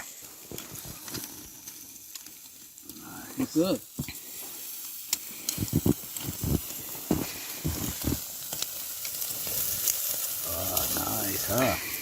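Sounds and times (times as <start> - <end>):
meat sizzling on a grill: 0.0 - 12.0.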